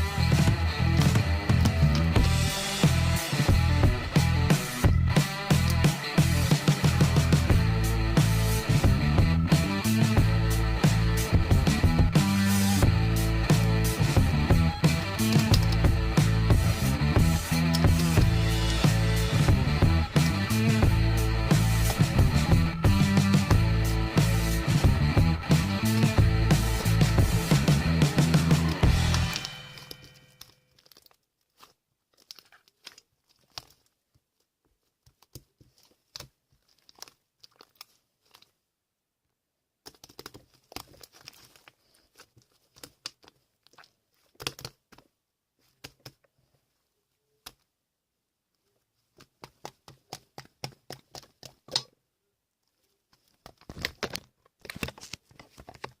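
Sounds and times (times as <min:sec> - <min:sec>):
music: 0:00.0 - 0:30.5.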